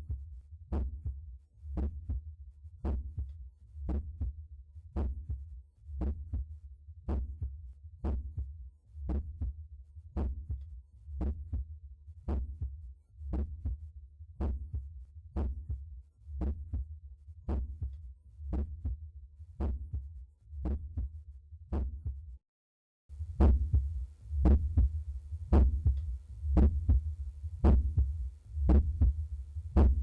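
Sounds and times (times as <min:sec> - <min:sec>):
heartbeat through stethoscope: 0:23.1 - 0:30.0
low rumble: 0:23.2 - 0:30.0.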